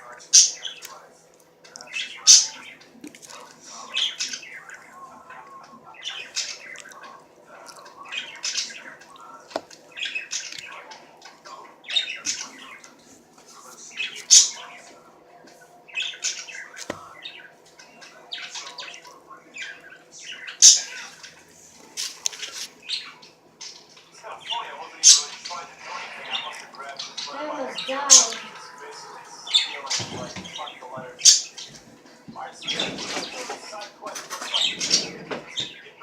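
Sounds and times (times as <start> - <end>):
bird squawking: 0.2 - 0.8, 1.9 - 2.9, 13.8 - 14.9, 15.9 - 21.5, 22.8 - 31.8, 32.5 - 36.0.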